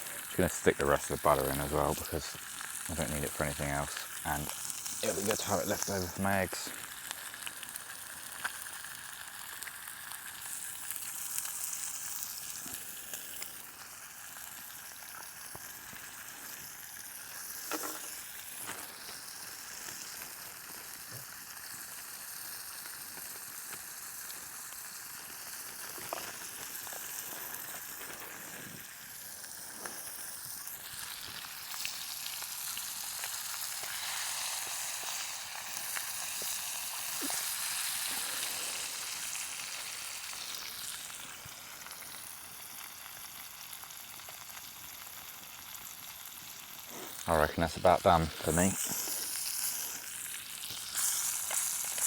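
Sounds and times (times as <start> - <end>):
steak sizzling in a pan: 0.0 - 52.0
faint ticks and pops: 7.8 - 8.7.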